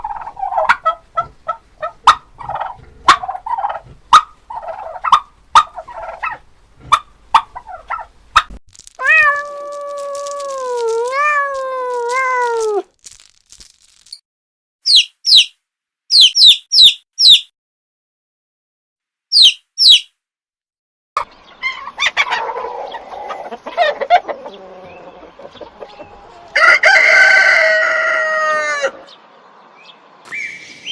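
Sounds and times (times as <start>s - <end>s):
farm animals calling: 0.0s - 8.1s, 21.2s - 29.2s.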